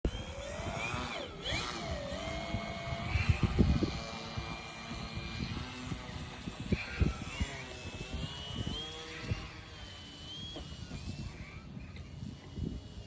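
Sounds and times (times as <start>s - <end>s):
model plane motor whining: 0.1s - 13.0s
wind rumbling on microphone: 0.1s - 13.0s.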